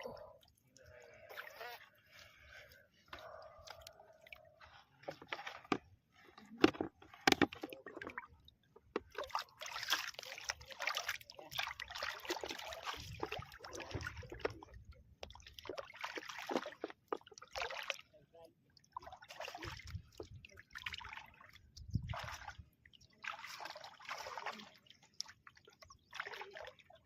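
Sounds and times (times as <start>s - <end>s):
water splashing and sloshing: 0.0s - 27.0s.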